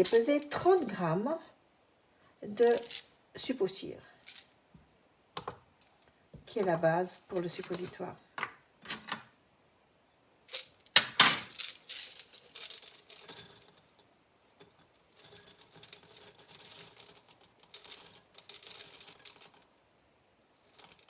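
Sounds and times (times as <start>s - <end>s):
small hard pieces clinking and rattling: 2.7s - 3.1s, 10.5s - 19.7s, 20.6s - 21.0s.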